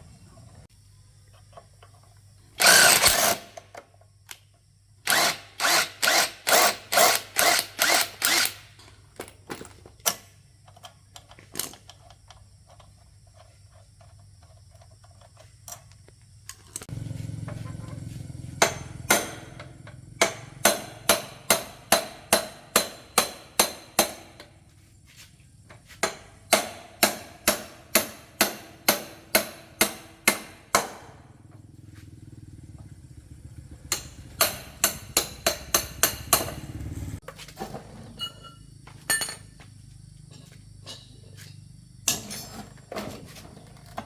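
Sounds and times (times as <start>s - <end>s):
hammer striking metal: 18.6s - 19.6s, 20.2s - 24.3s, 26.0s - 31.1s, 33.9s - 36.7s.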